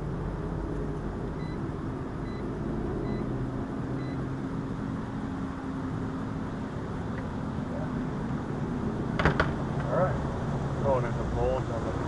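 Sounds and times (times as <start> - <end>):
engine rumble: 0.0 - 12.0
faint high beeps: 1.4 - 1.6, 2.2 - 2.4, 3.0 - 3.3, 4.0 - 4.2.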